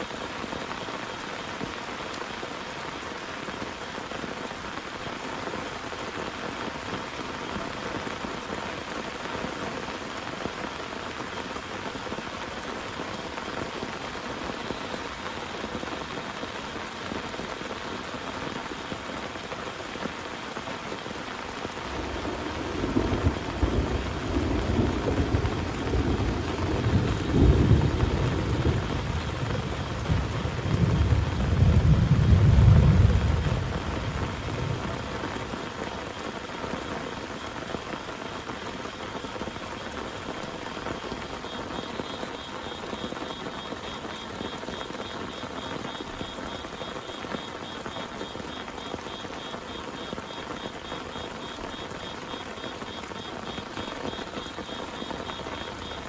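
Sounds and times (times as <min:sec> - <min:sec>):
heavy rain: 0:00.0 - 0:56.0
thunder rumbling: 0:21.6 - 0:35.8.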